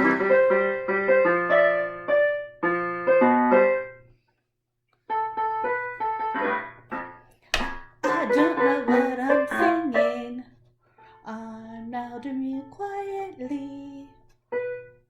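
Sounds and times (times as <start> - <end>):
piano keyboard playing: 0.0 - 3.9, 5.1 - 7.2, 8.0 - 10.4.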